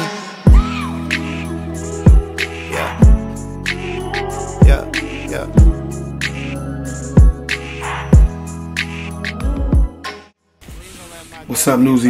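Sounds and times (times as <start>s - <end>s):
hip-hop song: 0.0s - 12.0s
heavy bass kick: 0.5s - 0.9s, 2.1s - 2.3s, 3.0s - 3.3s, 4.6s - 5.0s, 5.6s - 5.8s, 7.2s - 7.4s, 8.1s - 8.4s.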